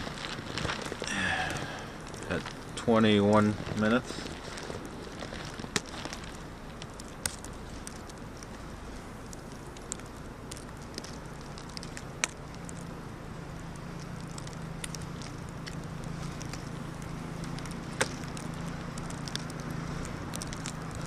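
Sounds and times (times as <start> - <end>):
low steady hum: 0.0 - 21.0
wind: 0.0 - 21.0
sharp clicks and ticks: 9.2 - 13.0, 13.6 - 21.0.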